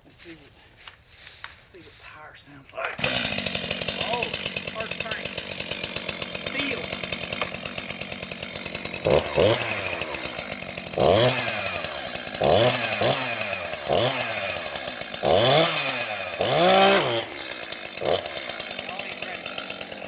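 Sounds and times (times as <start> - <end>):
chainsaw engine revving: 2.8 - 20.0.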